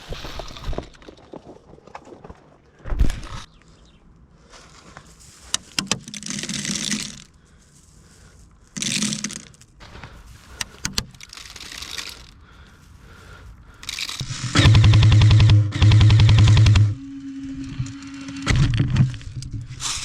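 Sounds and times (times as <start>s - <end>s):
sharp clicks: 13.8s - 17.0s.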